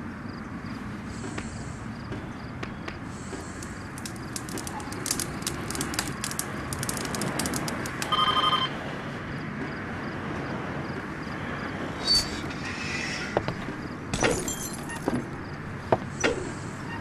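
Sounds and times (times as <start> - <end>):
sharp clicks: 2.6 - 8.4.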